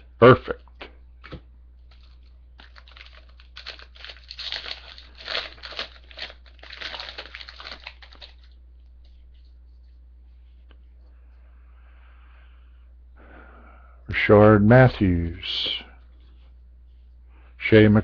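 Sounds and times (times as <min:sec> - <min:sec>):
foil wrapper tearing and crinkling: 0:01.9 - 0:08.6.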